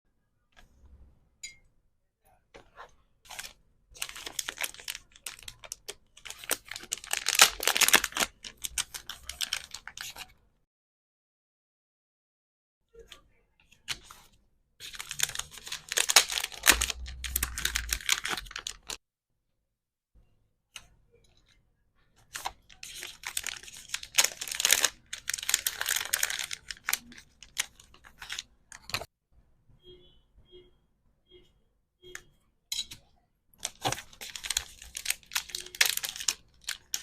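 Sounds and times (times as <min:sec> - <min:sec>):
plastic packaging crinkling: 0:03.3 - 0:10.3, 0:14.8 - 0:19.0, 0:22.3 - 0:29.1, 0:33.6 - 0:37.0.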